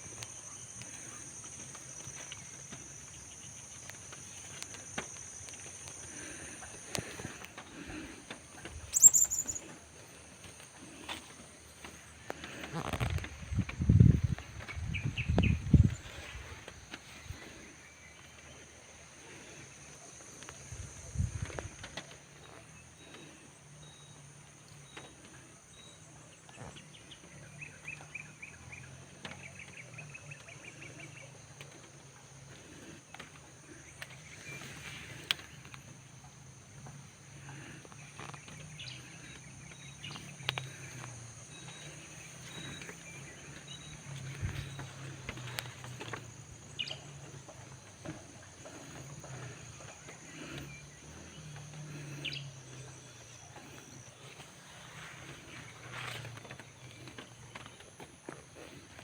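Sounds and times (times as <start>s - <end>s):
faint bird chirps: 0.0s - 13.7s, 14.6s - 36.0s, 37.0s - 57.9s
steady high-pitched hiss: 0.0s - 28.4s.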